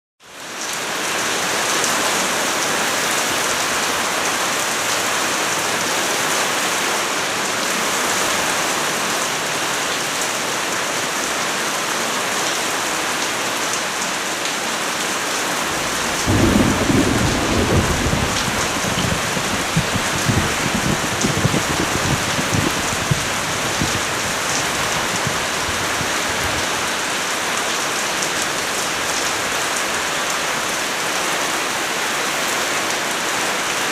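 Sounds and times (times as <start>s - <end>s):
steady rain hissing: 0.3s - 33.9s
thunder rumbling: 15.6s - 27.0s.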